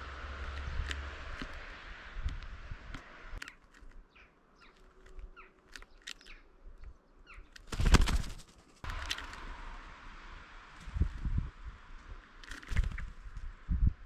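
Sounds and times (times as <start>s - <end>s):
small birds chirping: 0.0s - 9.5s
wings flapping: 7.5s - 9.6s, 12.5s - 13.5s.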